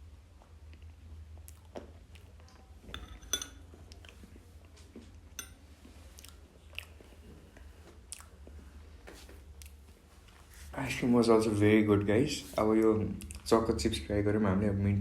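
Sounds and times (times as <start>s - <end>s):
chewing and smacking: 0.3s - 3.0s, 3.6s - 5.2s, 5.8s - 10.5s, 13.2s - 13.5s.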